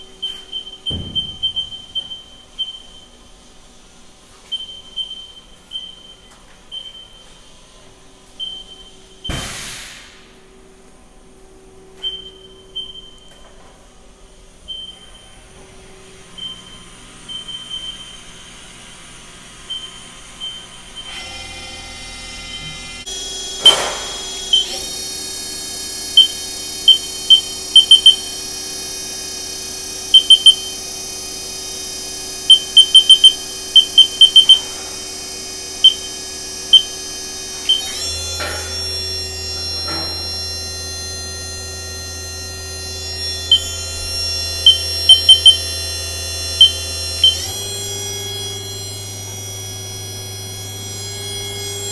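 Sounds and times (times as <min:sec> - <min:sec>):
machine spindle whine: 0:14.7 - 0:51.9
short sharp high beeps: 0:26.2 - 0:28.3, 0:30.1 - 0:30.8, 0:32.5 - 0:34.9, 0:35.8 - 0:37.0, 0:44.7 - 0:45.6.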